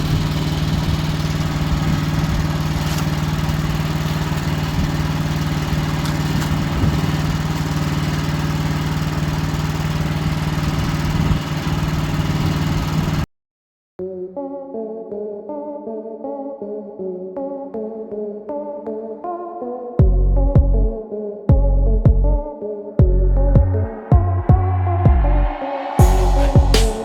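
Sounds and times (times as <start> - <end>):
sawmill engine running: 0.0 - 13.2
keyboard music: 23.0 - 27.0.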